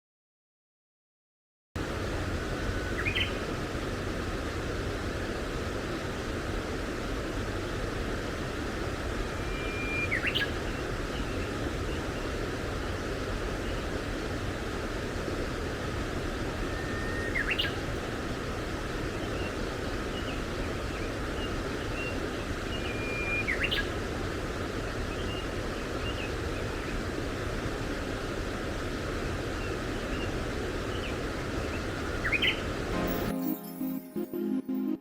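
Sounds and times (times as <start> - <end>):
steady rushing background noise: 1.8 - 33.1
songbird whistling song: 2.8 - 3.4, 9.3 - 12.3, 16.5 - 18.0, 20.2 - 24.0, 30.9 - 34.4.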